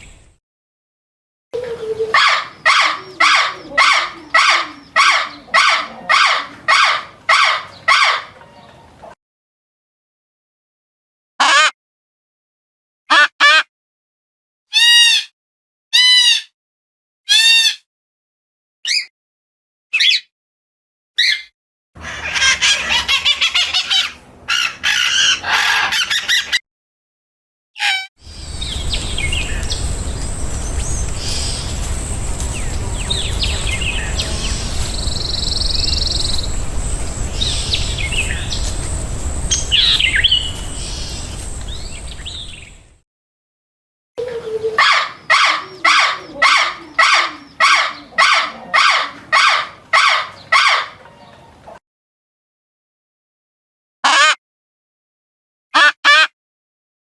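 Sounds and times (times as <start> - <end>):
small birds chirping: 0.0 - 0.4, 1.6 - 8.9, 28.2 - 43.0
bird giving harsh calls: 2.1 - 8.4, 21.2 - 26.6, 27.8 - 42.7, 44.6 - 51.0
thin high whine: 28.2 - 42.6
outdoor hiss: 28.2 - 43.0.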